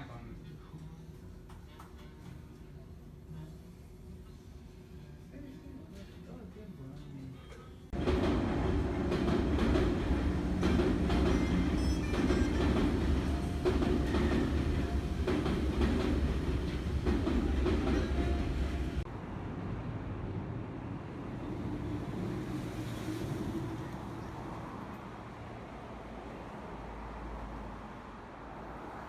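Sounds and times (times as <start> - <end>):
train rumbling on rails: 7.9 - 29.0
wheels clacking over rail joints: 8.0 - 19.0.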